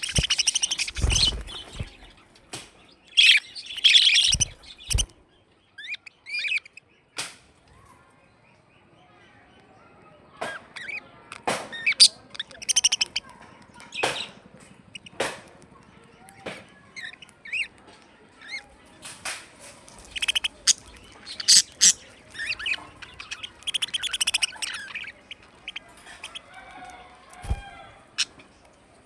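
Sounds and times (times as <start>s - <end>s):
budgerigar warbling chatter: 0.0s - 2.1s, 3.1s - 5.1s, 11.7s - 15.3s, 19.9s - 28.4s
budgerigars chirping and squawking: 0.0s - 7.3s, 10.4s - 15.5s, 16.2s - 28.6s.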